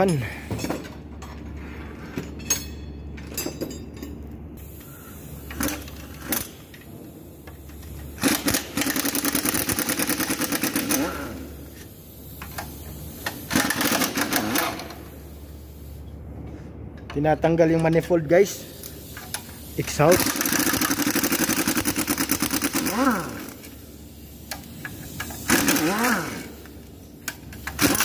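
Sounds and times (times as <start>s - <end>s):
wrench ratcheting: 7.7s - 11.2s, 12.4s - 15.0s, 18.8s - 23.8s, 24.5s - 28.0s.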